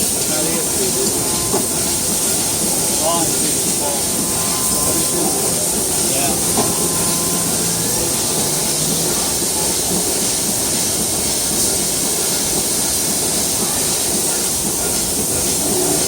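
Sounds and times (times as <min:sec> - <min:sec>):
machine-shop machinery hiss: 0:00.0 - 0:16.0
high-pitched tone: 0:00.9 - 0:09.7.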